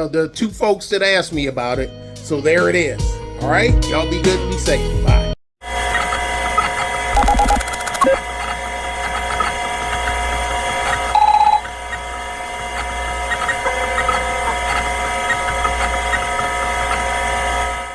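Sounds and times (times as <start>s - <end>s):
electronic music with beeping notes: 7.1s - 8.2s, 11.1s - 11.7s.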